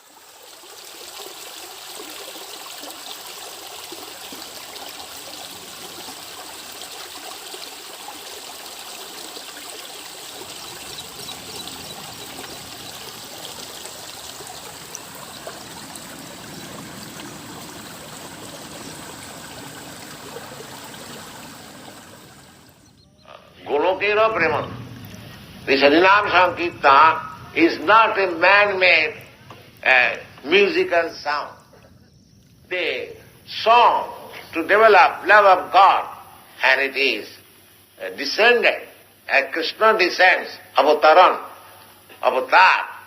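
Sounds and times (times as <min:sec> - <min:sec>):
river water flowing: 0:00.0 - 0:23.0, 0:23.7 - 0:29.2.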